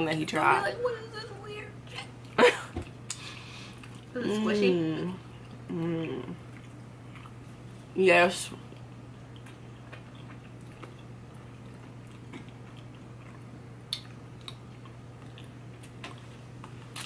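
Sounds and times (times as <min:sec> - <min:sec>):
low steady hum: 0:00.0 - 0:17.0
chewing and wet mouth clicks: 0:08.7 - 0:17.0.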